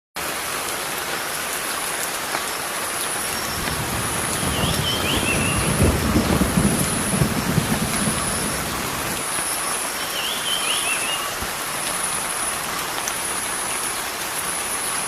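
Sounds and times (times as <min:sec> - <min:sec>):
steady rain falling: 0:00.2 - 0:15.0
high bird chirp: 0:04.4 - 0:05.8, 0:10.0 - 0:11.3.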